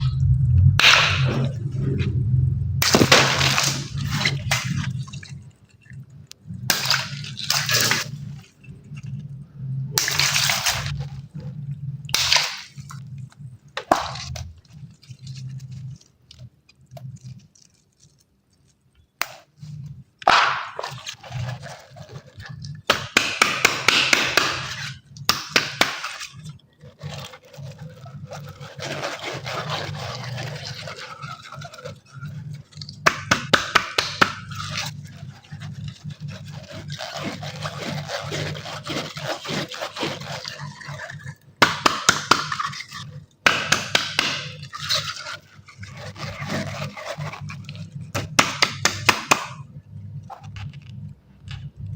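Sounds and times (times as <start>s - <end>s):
water gushing and splashing: 0.0s - 8.5s
low steady hum: 0.0s - 51.9s.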